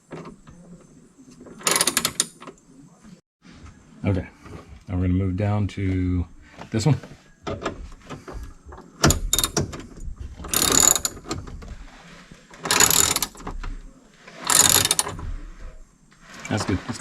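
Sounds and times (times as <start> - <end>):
hand ratchet clicking: 1.6 - 2.4, 9.0 - 9.6, 10.5 - 11.4, 12.7 - 13.6, 14.5 - 15.2.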